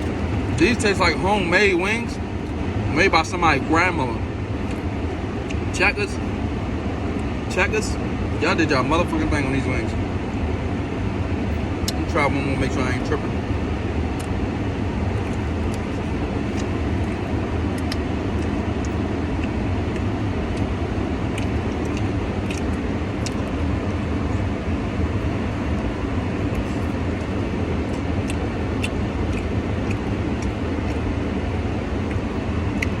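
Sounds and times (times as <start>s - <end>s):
low rumbling hum: 0.0s - 33.0s
eating clicks and smacks: 4.6s - 5.8s, 11.5s - 12.2s, 14.0s - 33.0s.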